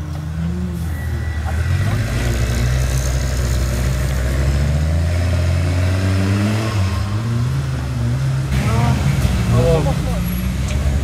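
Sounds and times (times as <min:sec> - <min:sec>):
buggy engine running: 0:00.0 - 0:06.0.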